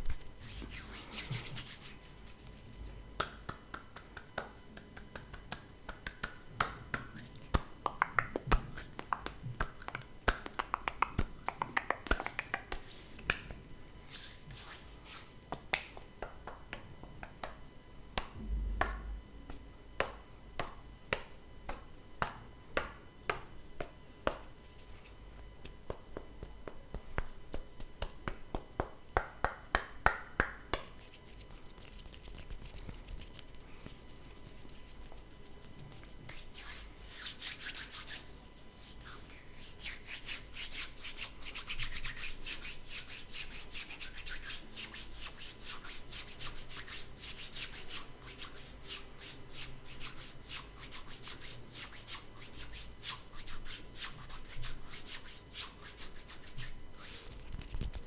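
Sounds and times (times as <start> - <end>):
finger snaps: 3.2 - 13.6, 18.2 - 24.5.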